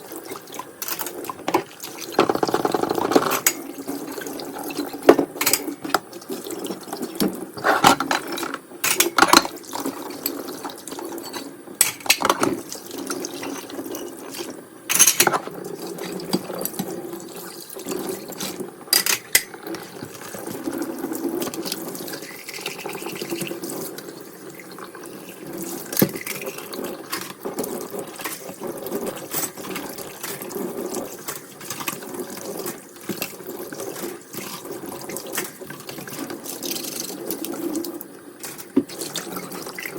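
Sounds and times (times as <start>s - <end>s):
dishes clinking: 0.8s - 3.6s, 5.0s - 6.0s, 7.6s - 9.6s, 14.9s - 15.5s, 18.9s - 19.6s
tap running into sink: 1.2s - 3.6s, 5.0s - 6.1s, 25.8s - 26.5s, 38.4s - 39.9s.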